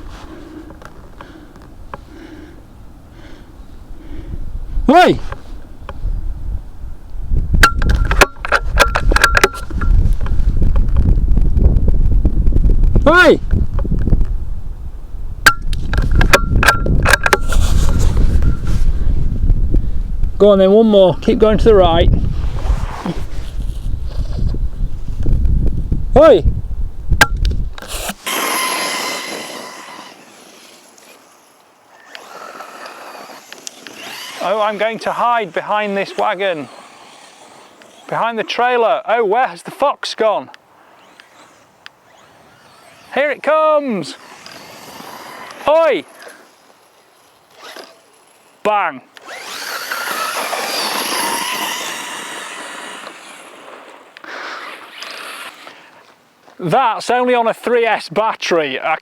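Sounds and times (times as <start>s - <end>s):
electric drive whirring: 26.9s - 38.7s, 40.5s - 56.2s
remote-control car motor whine: 27.8s - 38.6s, 40.8s - 43.2s, 44.1s - 56.1s.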